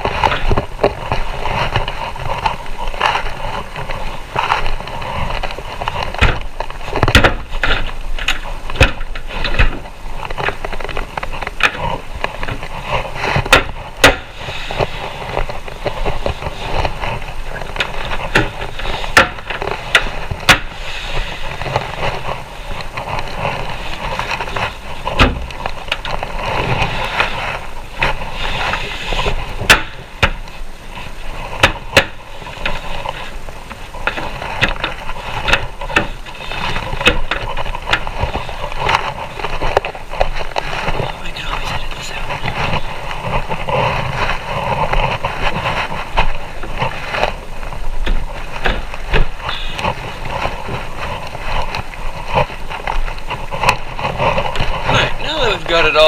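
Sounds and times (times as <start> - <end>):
scraping and rustling: 0.0 - 56.0
wooden panels knocking and clicking: 6.2 - 9.8.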